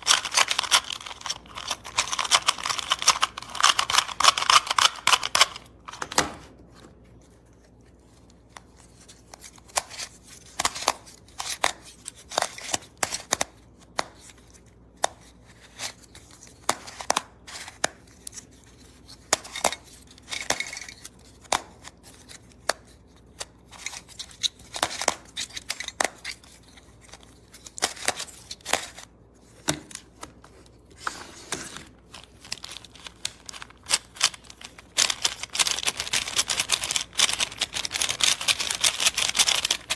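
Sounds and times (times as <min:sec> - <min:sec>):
speed cube clicking: 0:00.0 - 0:05.6.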